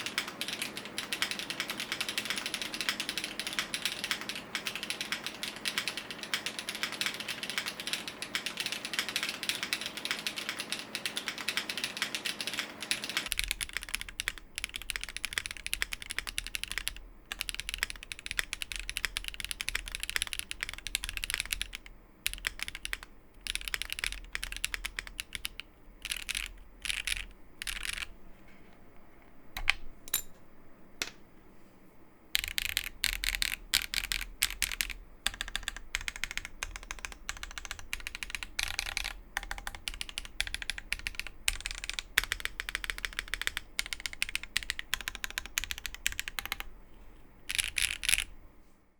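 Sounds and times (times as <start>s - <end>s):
mechanical keyboard typing: 0.0s - 28.2s, 32.3s - 46.8s, 47.4s - 48.4s.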